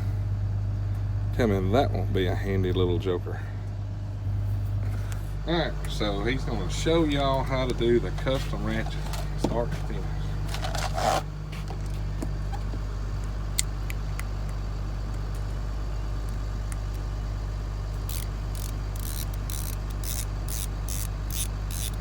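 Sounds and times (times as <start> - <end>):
machinery humming: 0.0 - 22.0
tools clicking: 18.1 - 22.0.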